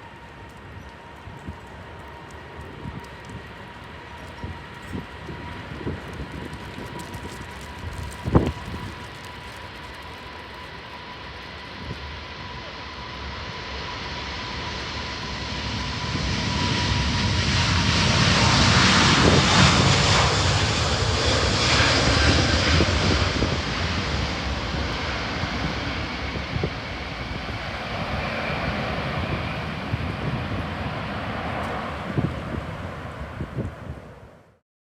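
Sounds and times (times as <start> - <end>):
airliner engines roaring: 0.0 - 34.6.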